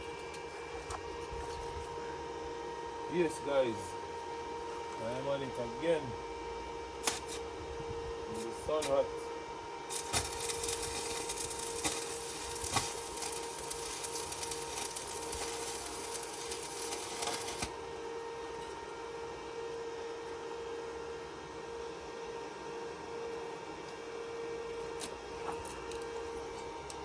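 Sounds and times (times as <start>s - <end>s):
steady electrical hum: 0.0s - 27.0s
electric arc welding crackling: 7.0s - 7.4s, 9.9s - 17.9s.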